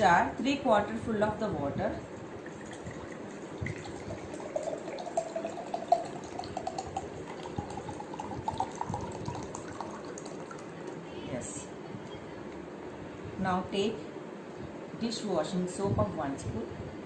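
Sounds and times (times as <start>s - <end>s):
water pouring into a jar: 2.4s - 11.0s.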